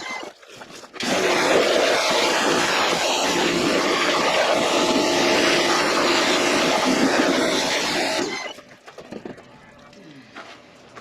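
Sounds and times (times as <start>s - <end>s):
pressure washer machine hum: 1.0s - 8.6s.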